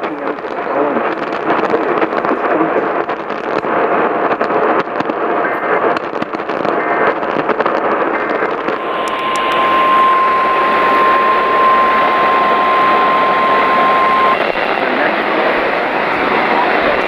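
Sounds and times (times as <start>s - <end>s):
radio static hiss and crackle: 0.0s - 17.0s
short data burst tones: 8.6s - 17.0s
steady alert tone: 8.8s - 17.0s.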